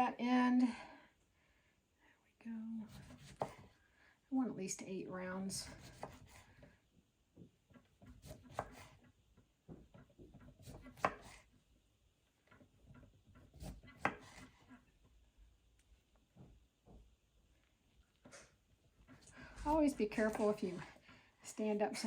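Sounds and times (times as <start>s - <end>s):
knife slicing on cutting board: 2.9s - 3.7s, 5.7s - 6.5s, 8.0s - 9.0s, 10.6s - 11.5s, 13.5s - 14.7s.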